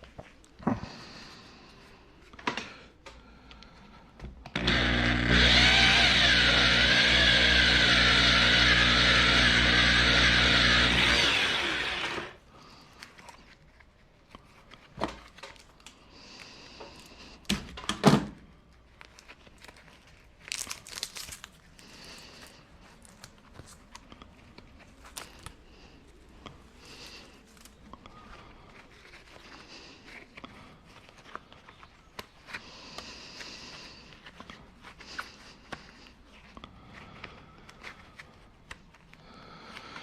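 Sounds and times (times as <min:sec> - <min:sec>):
electric drill running: 0:04.5 - 0:12.4.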